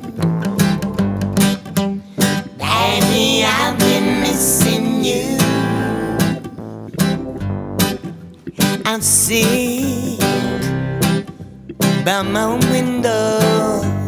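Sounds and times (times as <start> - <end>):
strummed acoustic guitar: 0.0 - 14.0
person singing: 2.6 - 6.5, 8.8 - 10.8, 12.0 - 14.0.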